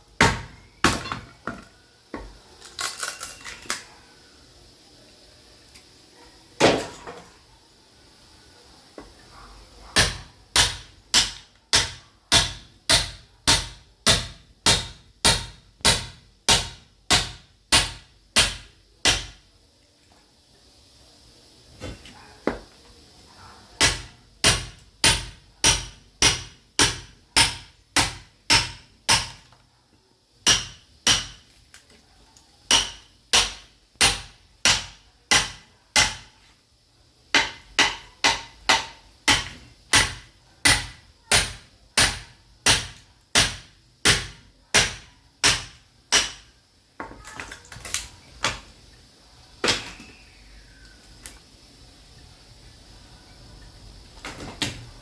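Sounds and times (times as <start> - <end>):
sledgehammer splitting firewood: 0.2 - 1.4, 6.6 - 7.2, 10.0 - 19.4, 23.8 - 29.5, 30.5 - 31.5, 32.7 - 36.3, 37.4 - 46.5.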